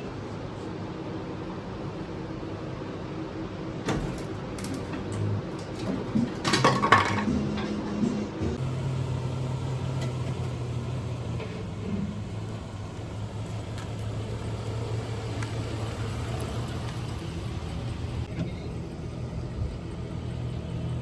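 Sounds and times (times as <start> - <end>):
pickup truck engine running: 8.5 - 21.0.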